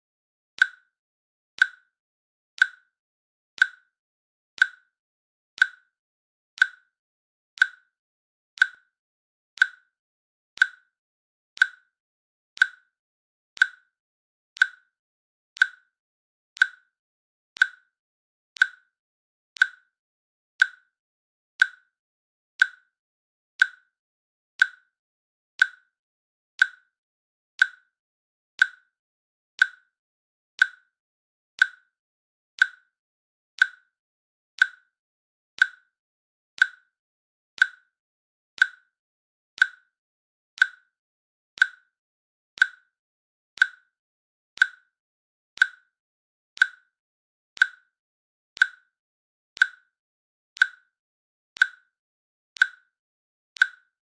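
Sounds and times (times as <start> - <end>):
timer clicks: 0.6 - 0.9, 1.6 - 1.9, 2.6 - 2.9, 3.6 - 3.9, 4.6 - 4.9, 5.6 - 5.9, 6.6 - 6.9, 7.6 - 7.9, 8.6 - 8.9, 9.6 - 9.9, 10.6 - 10.9, 11.6 - 12.0, 12.6 - 13.0, 13.6 - 13.9, 14.6 - 15.0, 15.6 - 16.0, 16.6 - 17.0, 17.6 - 17.9, 18.6 - 19.0, 19.6 - 20.0, 20.6 - 20.9, 21.6 - 22.0, 22.6 - 22.9, 23.6 - 24.0, 24.6 - 25.0, 25.6 - 26.0, 26.6 - 27.0, 27.6 - 28.0, 28.6 - 29.0, 29.6 - 30.0, 30.6 - 31.0, 31.6 - 32.0, 32.6 - 33.0, 33.6 - 34.0, 34.6 - 35.0, 35.6 - 36.0, 36.6 - 37.0, 37.6 - 38.0, 38.6 - 39.0, 39.6 - 40.0, 40.6 - 41.0, 41.6 - 42.0, 42.6 - 43.0, 43.6 - 44.0, 44.6 - 45.0, 45.6 - 46.0, 46.6 - 47.0, 47.6 - 48.0, 48.6 - 49.0, 49.6 - 50.0, 50.6 - 51.0, 51.6 - 52.0, 52.6 - 53.0, 53.6 - 54.0.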